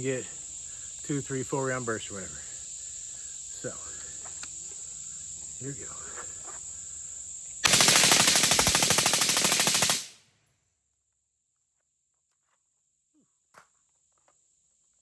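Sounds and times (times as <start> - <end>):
crickets chirping: 0.0 - 10.1
rifle rapid fire: 7.6 - 10.2.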